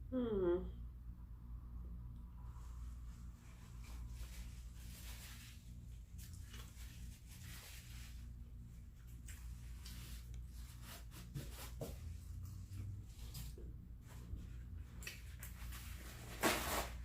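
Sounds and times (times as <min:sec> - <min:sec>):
steady low hum: 0:00.0 - 0:16.2
faint rustling and scraping: 0:02.5 - 0:17.0.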